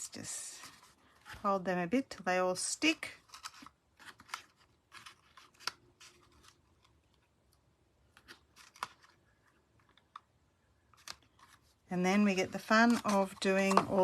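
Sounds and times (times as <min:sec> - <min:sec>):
paper rustling and scraping: 0:03.0 - 0:07.2, 0:08.1 - 0:09.6, 0:10.9 - 0:14.0.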